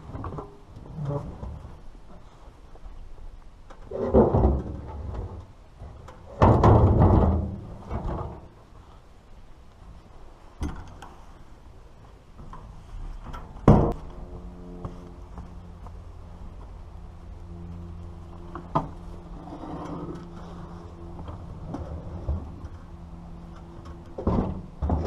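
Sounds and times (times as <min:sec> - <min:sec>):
heavy thuds and clunks: 0:13.2 - 0:14.1.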